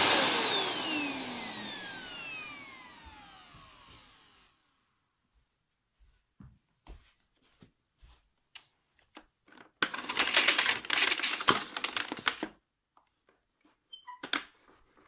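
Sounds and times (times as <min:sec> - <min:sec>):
plastic parts clicking and knocking: 0:09.1 - 0:13.4
rattling plastic clatter: 0:09.4 - 0:12.5.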